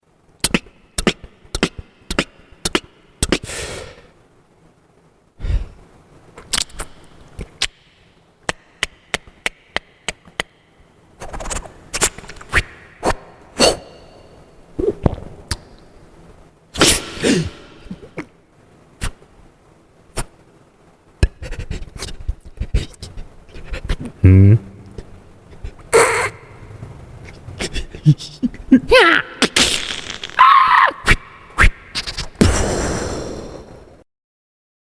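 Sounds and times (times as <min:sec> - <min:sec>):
beatboxing clicks and pops: 0:00.4 - 0:03.5, 0:06.4 - 0:10.6, 0:11.2 - 0:13.8, 0:14.8 - 0:15.9, 0:19.0 - 0:19.2, 0:21.2 - 0:24.2, 0:29.4 - 0:30.4, 0:31.1 - 0:33.1
beatboxing deep thump: 0:32.0 - 0:33.3
breathy mouth sweeps: 0:32.0 - 0:33.9.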